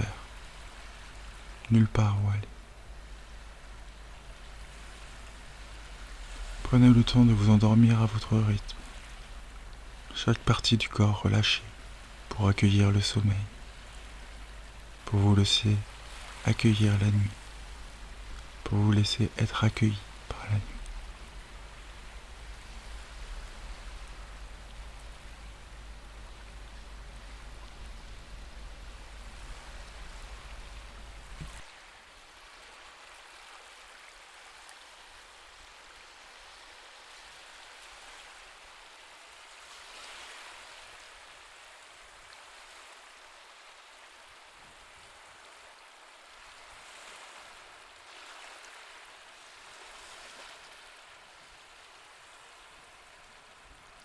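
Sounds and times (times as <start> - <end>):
ocean waves washing softly: 0.0 - 54.0
low hum: 0.2 - 31.7.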